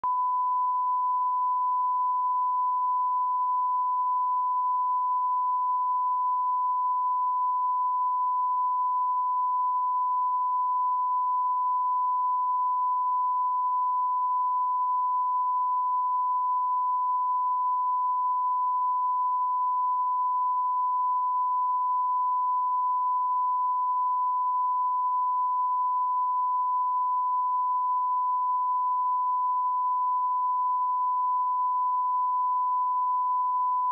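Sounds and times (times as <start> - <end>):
steady sine test tone: 0.0 - 33.9.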